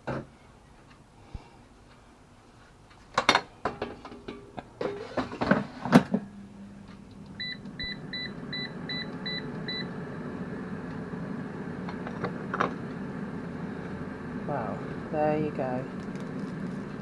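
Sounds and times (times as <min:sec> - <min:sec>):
air fryer fan humming: 0:03.1 - 0:17.0
air fryer control panel beeps: 0:07.3 - 0:10.0.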